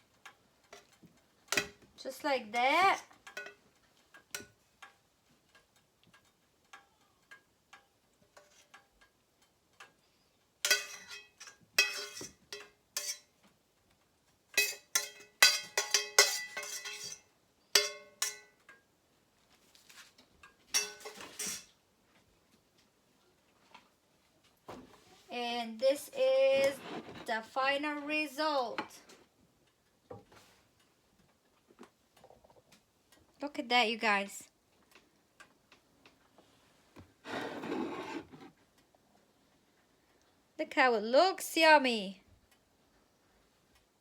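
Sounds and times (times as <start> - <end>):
metal utensil scraping cookware: 2.9 - 3.6, 10.6 - 13.3, 14.6 - 18.5, 20.7 - 21.7.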